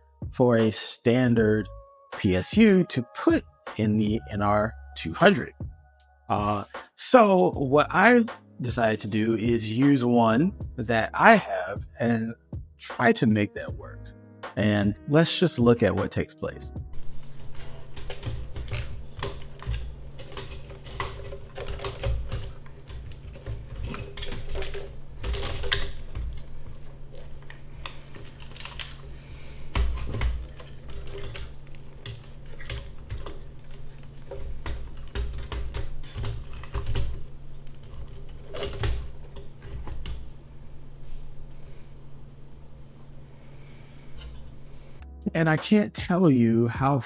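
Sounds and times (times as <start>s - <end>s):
steady low hum: 16.4s - 46.8s
plastic and metal parts clicking: 17.4s - 40.2s.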